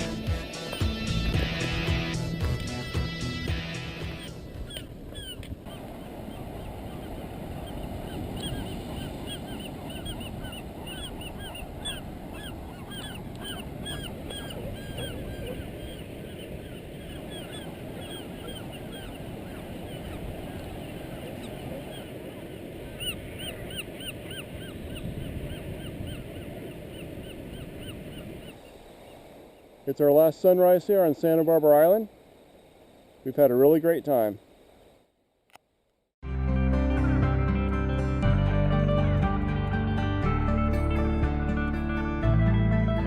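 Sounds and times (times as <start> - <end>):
birds calling: 0.0 - 34.3.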